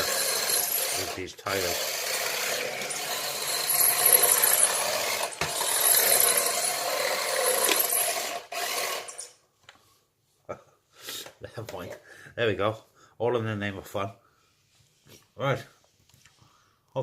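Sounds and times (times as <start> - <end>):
tyres scrubbing and spinning: 0.0 - 9.3
toy car electric motor whine: 0.0 - 9.4.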